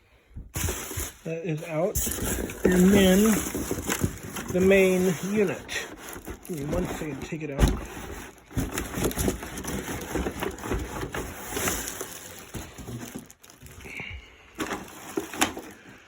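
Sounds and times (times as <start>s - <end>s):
cardboard packaging crackling: 0.6s - 14.0s, 14.6s - 16.0s.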